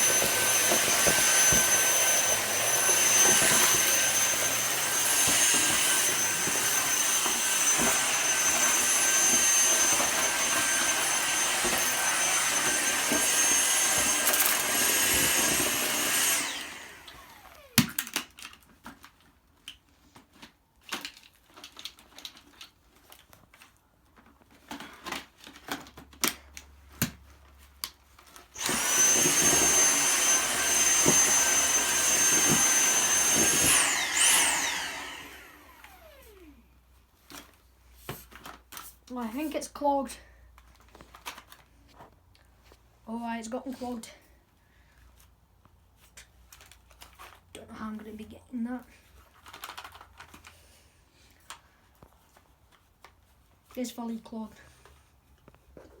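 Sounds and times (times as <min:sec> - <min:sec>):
vacuum cleaner motor whine: 0:00.0 - 0:17.9, 0:28.6 - 0:36.6.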